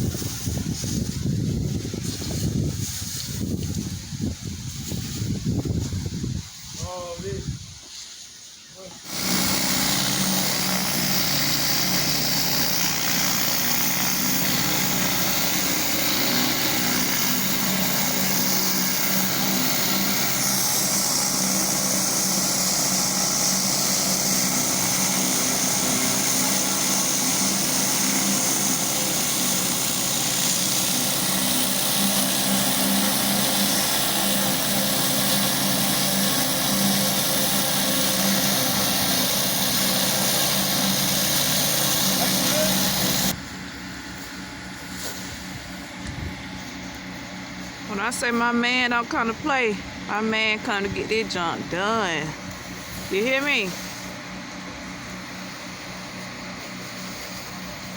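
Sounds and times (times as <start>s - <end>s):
pressure washer engine running: 0.0s - 5.2s, 8.7s - 57.9s
water jet spraying hiss: 0.0s - 43.4s.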